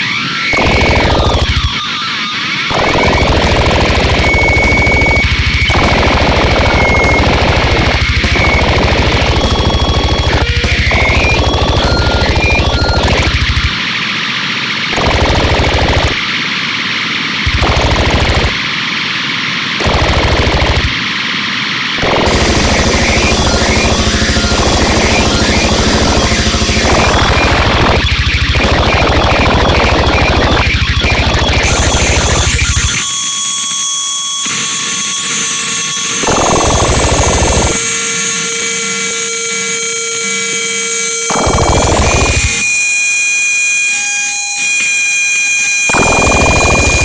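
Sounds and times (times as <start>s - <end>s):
held electronic tones: 2.9s - 13.8s, 22.2s - 33.7s, 36.2s - 43.0s
pulsing low rumble: 3.1s - 13.8s, 17.5s - 18.6s, 22.3s - 33.0s
high hiss-like drone: 21.0s - 28.0s.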